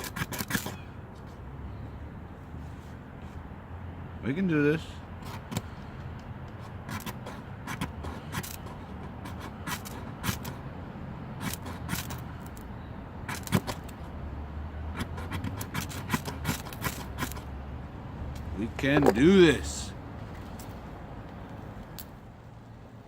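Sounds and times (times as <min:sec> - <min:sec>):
metal file scraping ferrocerium rod: 0:00.0 - 0:00.8, 0:06.4 - 0:10.6, 0:11.4 - 0:12.6, 0:13.3 - 0:14.1, 0:14.9 - 0:17.5.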